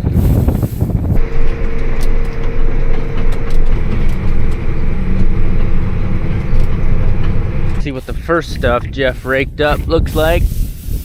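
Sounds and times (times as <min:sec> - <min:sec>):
vehicle engine running: 0:01.0 - 0:09.4.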